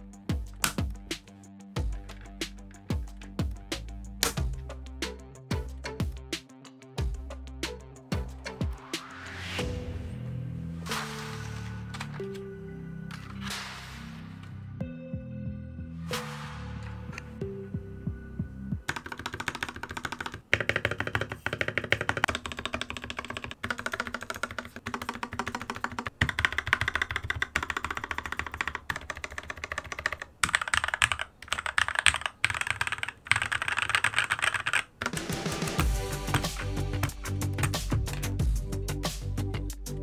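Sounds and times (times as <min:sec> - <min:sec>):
background music: 0:00.0 - 0:27.0, 0:35.0 - 0:40.0
mechanical keyboard typing: 0:18.9 - 0:38.4.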